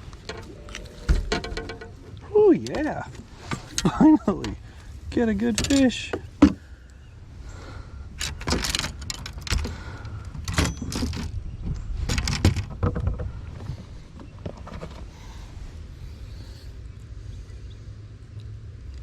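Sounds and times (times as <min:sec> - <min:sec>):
fishing gear rattling and knocking: 0:00.0 - 0:06.7, 0:08.2 - 0:11.4, 0:12.0 - 0:15.2
low steady rumble: 0:00.0 - 0:19.0.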